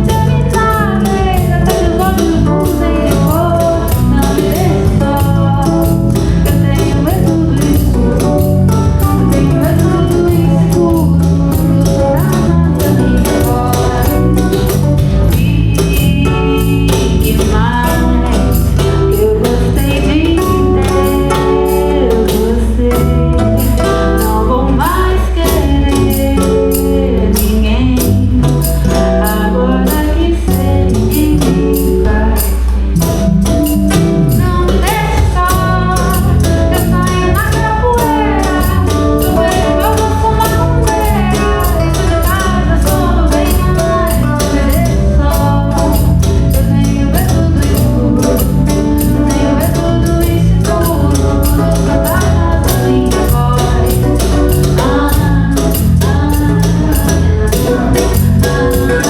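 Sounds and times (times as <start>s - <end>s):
band playing a song: 0.0s - 59.0s
person singing: 0.0s - 59.0s
steady bass line: 0.0s - 59.0s.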